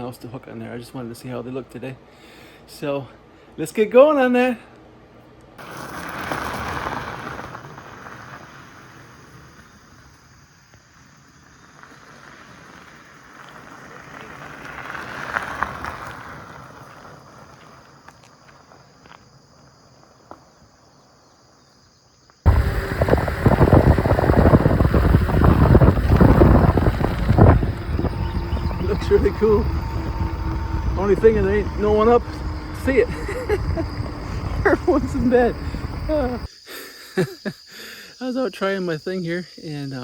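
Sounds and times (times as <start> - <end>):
outdoor rushing noise: 22.5 - 36.5
wind buffeting microphone: 22.5 - 36.5.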